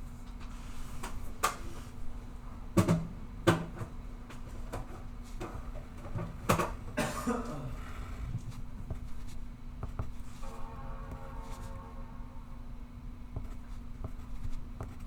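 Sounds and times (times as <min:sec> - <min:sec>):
low room hum: 0:00.0 - 0:15.0
objects knocking on a desk: 0:02.8 - 0:03.9.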